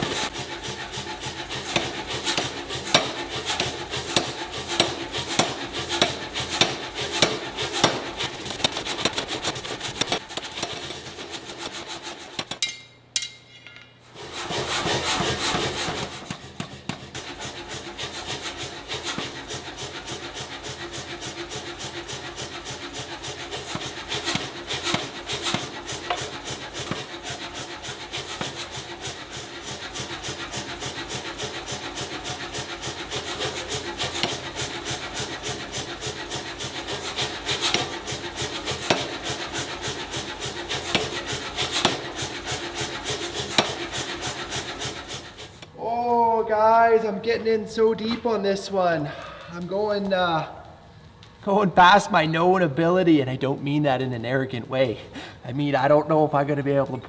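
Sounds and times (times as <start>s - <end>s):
hand tool scraping: 0.0s - 13.4s, 14.0s - 50.3s
steady hum: 45.3s - 57.0s.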